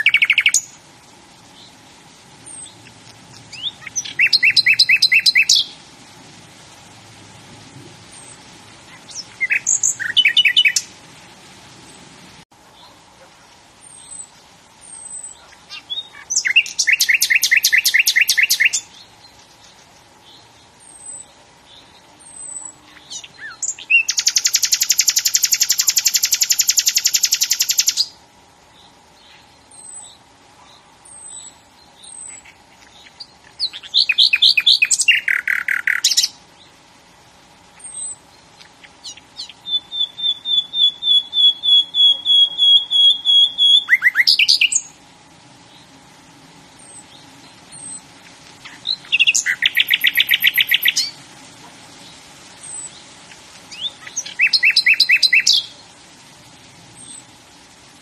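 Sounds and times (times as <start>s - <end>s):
songbird singing rapid trills: 0.0s - 0.8s, 2.4s - 5.8s, 8.1s - 11.0s, 13.8s - 36.8s, 37.7s - 45.0s, 46.8s - 51.2s, 52.0s - 56.0s.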